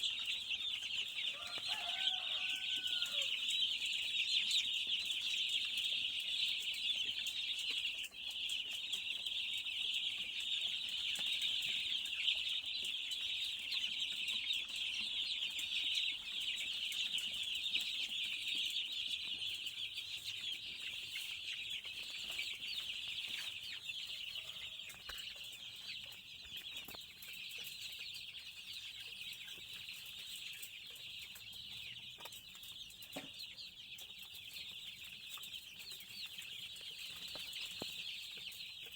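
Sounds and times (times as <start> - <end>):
chicks peeping: 0.0 - 38.9.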